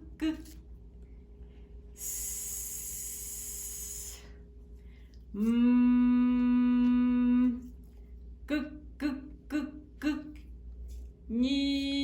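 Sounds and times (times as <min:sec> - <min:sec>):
woman hissing sss: 0:02.0 - 0:04.4
woman humming: 0:05.3 - 0:07.7.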